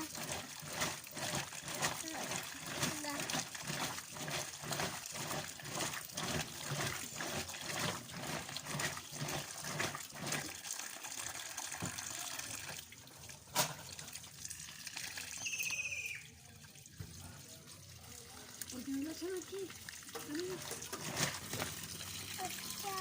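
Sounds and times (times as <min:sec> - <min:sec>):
water sloshing into washing machine: 0:00.0 - 0:23.0
short high chirp: 0:15.4 - 0:16.3.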